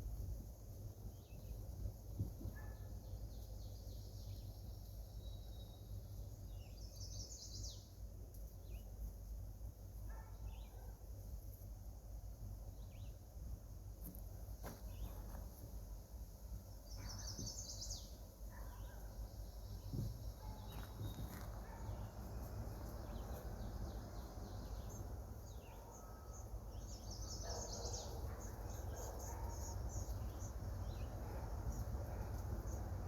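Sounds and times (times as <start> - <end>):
birds chirping: 16.7 - 33.0.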